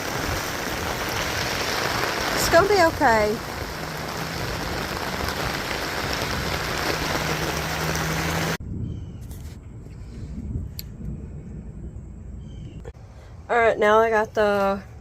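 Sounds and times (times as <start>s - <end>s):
heavy rain pouring: 0.0s - 8.6s.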